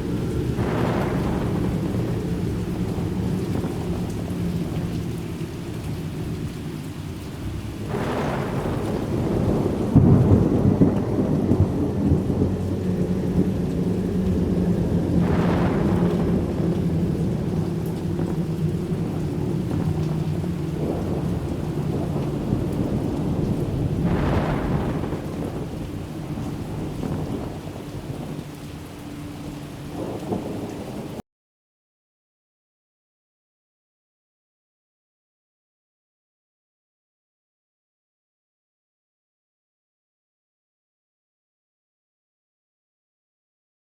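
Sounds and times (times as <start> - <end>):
dark low rumble: 0.0 - 30.8.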